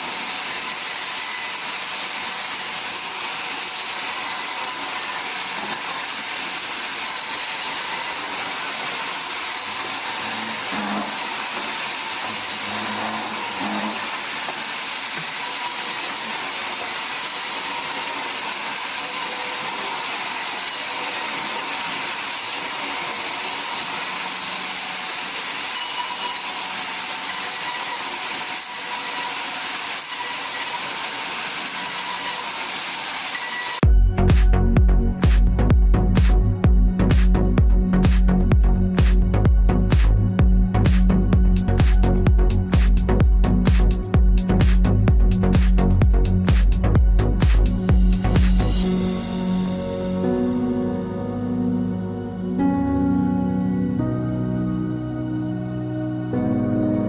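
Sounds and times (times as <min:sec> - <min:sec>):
sawmill machinery hissing: 0:00.0 - 0:34.4, 0:40.8 - 0:51.4.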